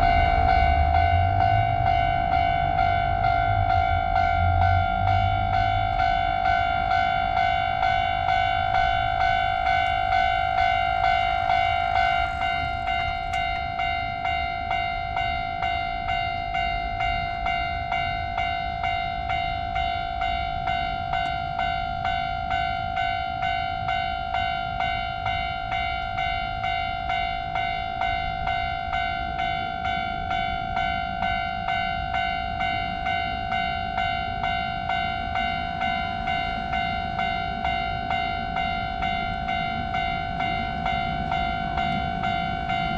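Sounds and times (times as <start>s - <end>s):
low rumble: 0.0s - 2.4s
railroad crossing bell ringing: 0.0s - 42.9s.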